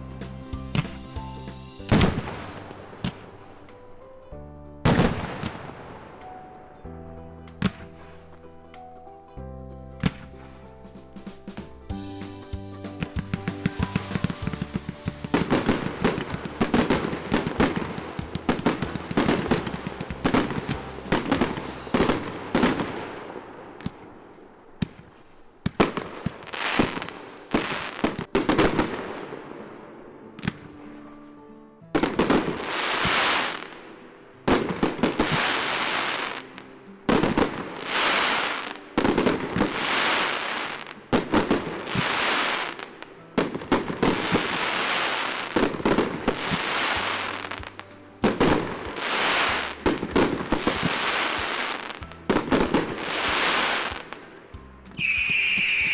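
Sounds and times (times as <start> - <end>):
firecracker bangs and crackles: 0.0 - 3.9, 4.8 - 6.5, 10.0 - 29.8, 32.0 - 33.8, 34.5 - 36.5, 37.1 - 55.9
loud hissing firework bursts: 10.9 - 23.3, 32.5 - 33.7, 34.6 - 36.5, 37.2 - 42.9, 43.7 - 47.7, 48.3 - 54.3.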